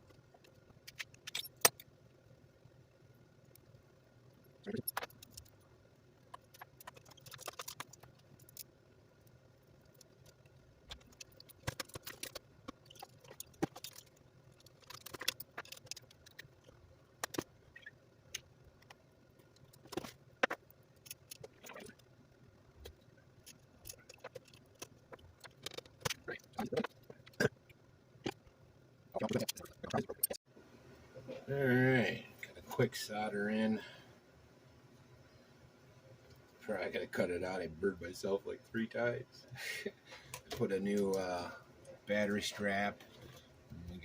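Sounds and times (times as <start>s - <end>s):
faint steady hum: 0.0s - 44.0s
small tools clicking and rattling: 0.1s - 1.9s, 4.6s - 5.6s, 6.2s - 8.8s, 9.8s - 17.6s, 18.3s - 22.1s, 22.8s - 28.4s.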